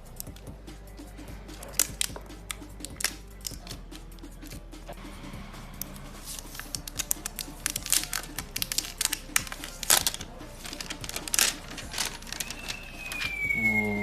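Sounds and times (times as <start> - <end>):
plastic snapping: 1.5 - 3.8, 5.8 - 13.6
plastic packaging crinkling: 6.6 - 13.4.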